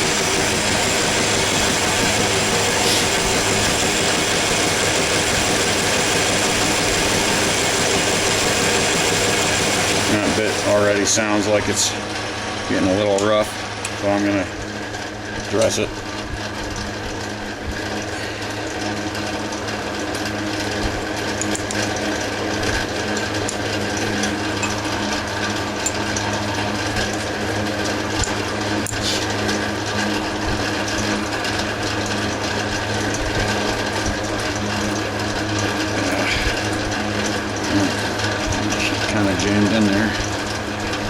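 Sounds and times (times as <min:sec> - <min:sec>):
tool bit grinding on wheel: 0:00.0 - 0:10.9
bench grinder running: 0:00.0 - 0:41.0.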